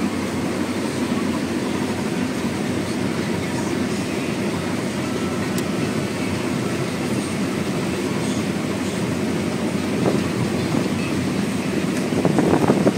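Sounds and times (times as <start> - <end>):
combine harvester running: 0.0 - 12.9.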